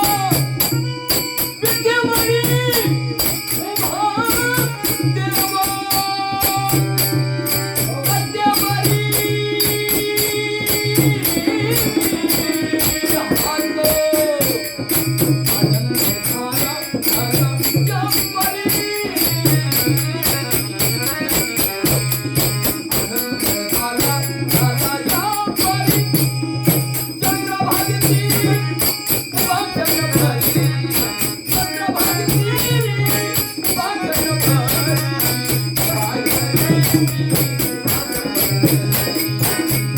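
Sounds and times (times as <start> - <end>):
jingling percussion beat: 0.0 - 39.9.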